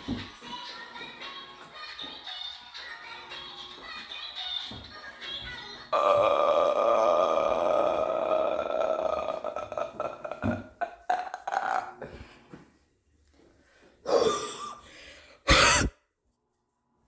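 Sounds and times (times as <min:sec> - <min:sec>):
person making burp-like croaks: 0:05.9 - 0:12.2, 0:15.5 - 0:15.9.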